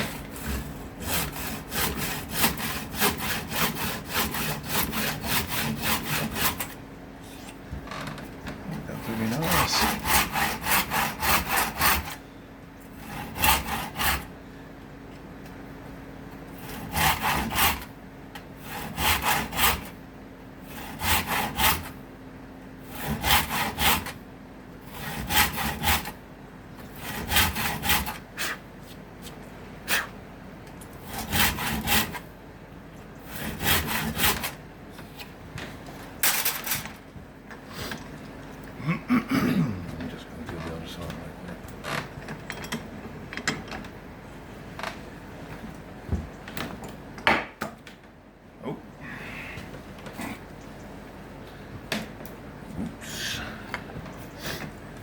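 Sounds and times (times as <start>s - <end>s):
hand saw cutting wood: 0.0s - 7.6s, 8.8s - 12.2s, 12.9s - 14.4s, 16.5s - 17.9s, 18.6s - 20.0s, 20.6s - 22.0s, 22.8s - 24.2s, 24.8s - 26.2s, 26.8s - 30.1s, 31.0s - 32.3s, 33.2s - 35.3s
faint steady hum: 0.0s - 55.0s.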